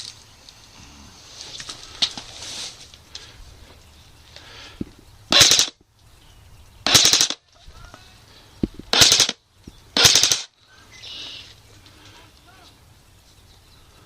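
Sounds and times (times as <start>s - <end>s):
airsoft rifle full-auto bursts: 5.3s - 5.8s, 6.8s - 7.4s, 8.9s - 9.4s, 10.0s - 10.5s.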